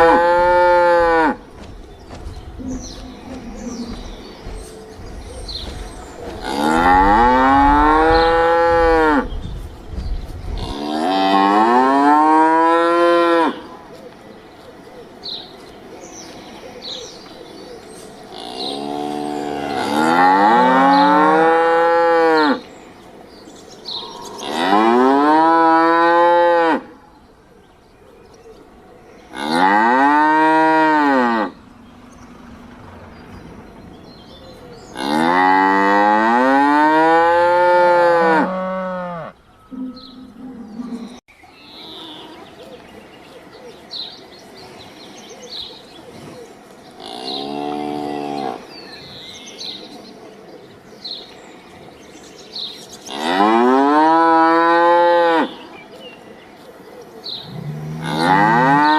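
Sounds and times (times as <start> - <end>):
cow mooing: 0.0 - 1.4, 6.4 - 9.3, 18.4 - 22.6, 29.3 - 31.6, 34.9 - 41.2, 57.5 - 58.9.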